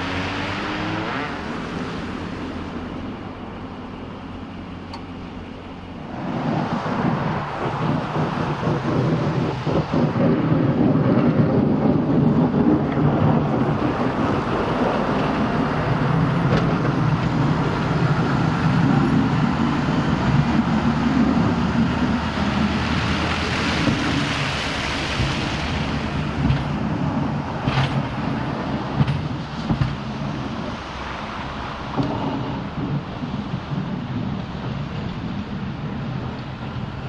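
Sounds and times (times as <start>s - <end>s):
vehicle engine drone: 0.0s - 37.0s
tyres hissing through slush: 17.1s - 27.6s.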